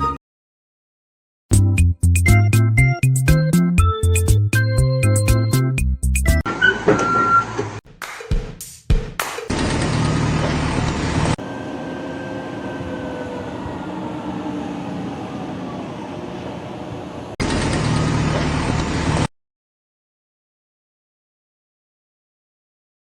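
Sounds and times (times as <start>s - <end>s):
machine mechanical noise with hum: 9.5s - 19.3s
faint falling whines: 11.4s - 17.4s.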